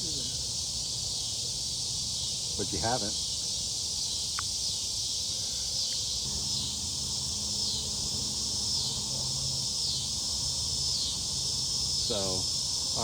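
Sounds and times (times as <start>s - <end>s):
insects chirring: 0.0s - 13.0s
low steady hum: 6.2s - 13.0s.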